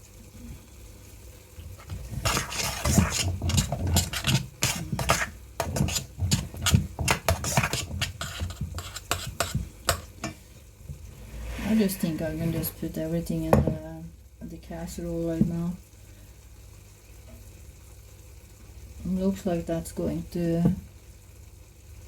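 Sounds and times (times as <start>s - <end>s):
spoon stirring and scraping dish: 1.6s - 12.9s.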